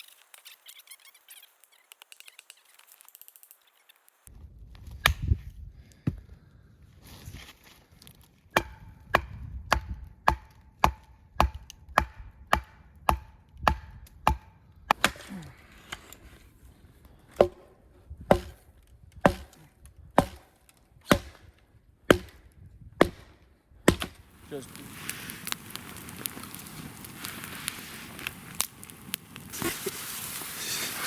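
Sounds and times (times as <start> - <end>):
hatchet chopping wood: 8.5 - 16.0, 17.4 - 21.5, 22.1 - 24.3.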